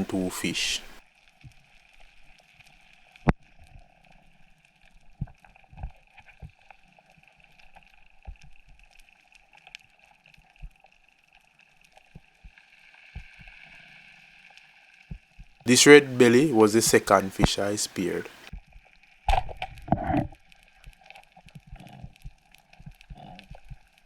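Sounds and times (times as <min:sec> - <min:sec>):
faint underwater hiss: 0:00.0 - 0:01.0, 0:15.7 - 0:18.5.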